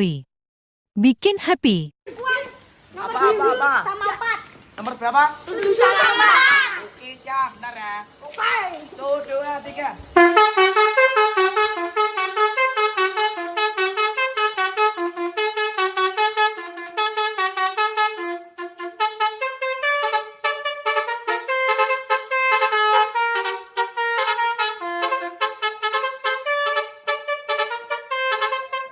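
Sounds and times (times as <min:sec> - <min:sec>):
musical air horn: 0:10.2 - 0:28.9.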